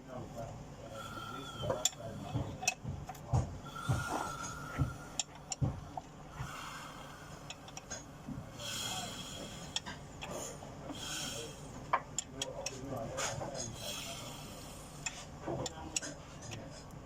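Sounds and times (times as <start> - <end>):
engine running with knocks: 1.7 - 6.9.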